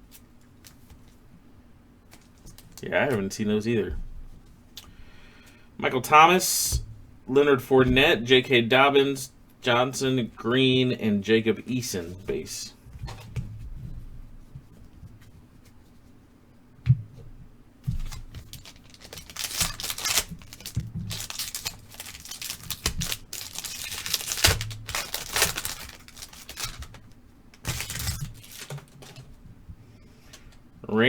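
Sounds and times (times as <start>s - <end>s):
wrapper tearing and crinkling: 18.1s - 29.2s.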